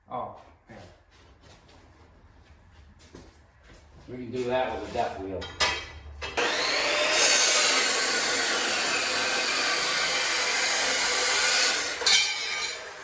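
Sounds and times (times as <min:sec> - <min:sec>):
angle grinder grinding steel: 0:06.2 - 0:13.0.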